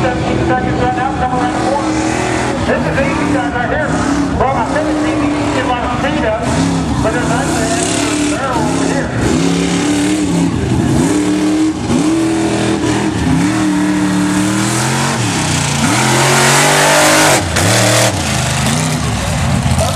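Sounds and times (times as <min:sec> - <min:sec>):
truck engine revving hard: 0:00.0 - 0:19.9.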